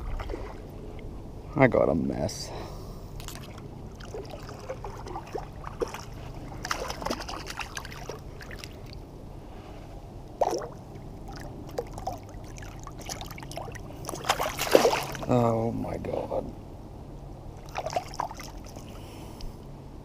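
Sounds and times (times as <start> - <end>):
water splashing around kayak: 0.0 - 1.1, 3.2 - 9.0, 10.4 - 15.4, 17.6 - 19.1.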